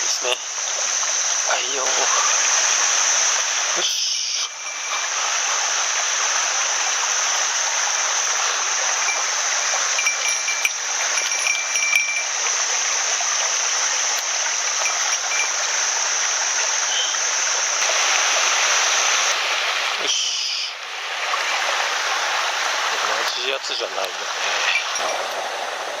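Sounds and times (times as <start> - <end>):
stream rushing over rocks: 0.0 - 26.0
thin tones: 3.8 - 6.0, 8.4 - 13.2, 14.2 - 16.2.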